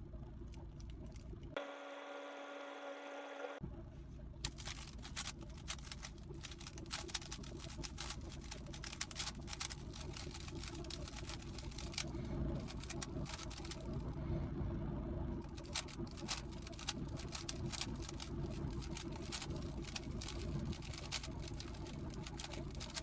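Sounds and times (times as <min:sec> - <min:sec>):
puzzle cube clicking: 0:04.5 - 0:13.8, 0:15.6 - 0:23.0.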